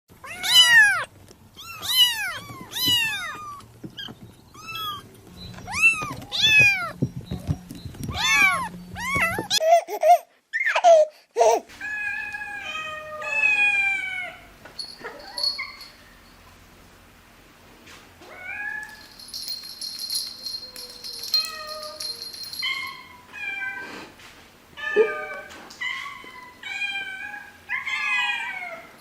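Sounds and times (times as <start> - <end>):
cat meowing: 0.2 - 5.0
kittens mewing: 0.2 - 5.1.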